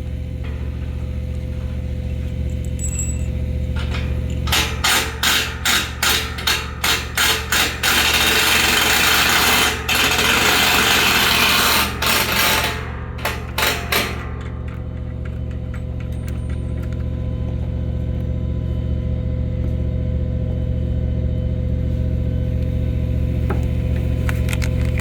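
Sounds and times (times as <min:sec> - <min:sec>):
low machinery hum: 0:00.0 - 0:25.0
power tool bursts: 0:03.8 - 0:14.6.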